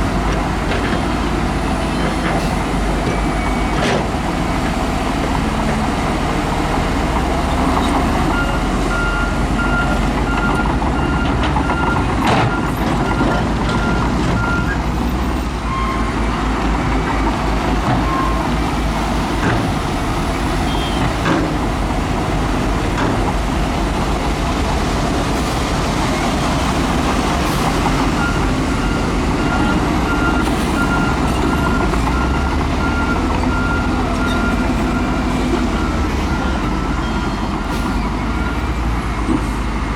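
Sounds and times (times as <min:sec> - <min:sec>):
heavy diesel machinery running: 0:00.0 - 0:39.9
reversing alarm beeping: 0:08.3 - 0:14.8, 0:28.2 - 0:39.0.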